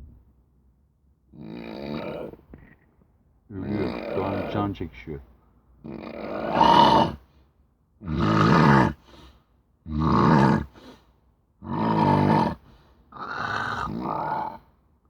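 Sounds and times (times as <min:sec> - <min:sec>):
loud throaty snoring: 0:03.6 - 0:04.6, 0:05.8 - 0:07.2, 0:08.0 - 0:09.0, 0:09.9 - 0:10.8, 0:11.6 - 0:12.6, 0:13.2 - 0:14.6.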